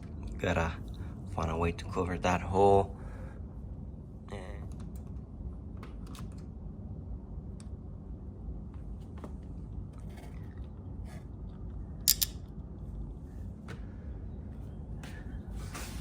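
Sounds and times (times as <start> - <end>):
door lock hardware clicking: 12.1 - 12.4
sharp metallic clicks: 12.1 - 12.4.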